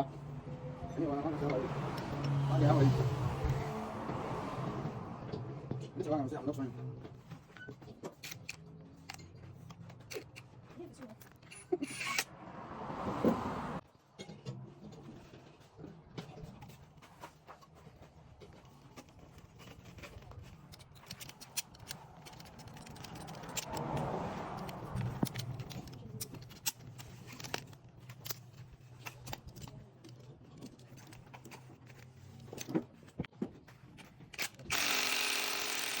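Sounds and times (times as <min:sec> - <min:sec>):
metallic clicks and knocks: 0:20.6 - 0:31.7.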